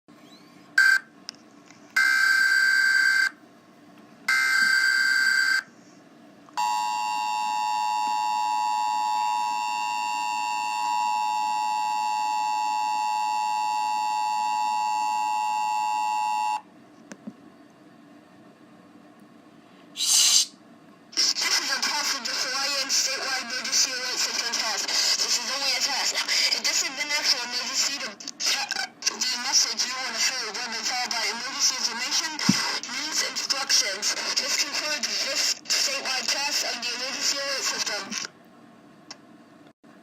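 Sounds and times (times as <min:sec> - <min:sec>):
two-tone attention signal: 0:06.6 - 0:16.6.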